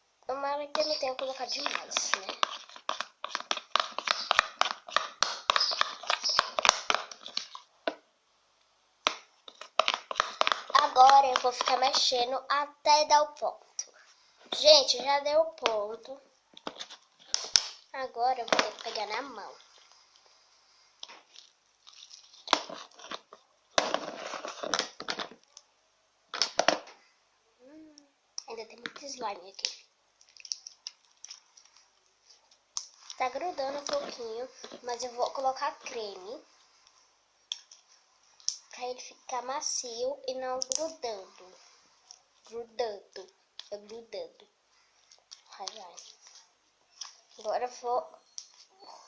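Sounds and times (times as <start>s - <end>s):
slime squelching when stirred: 0.4s - 7.7s, 9.0s - 12.2s, 28.4s - 36.4s.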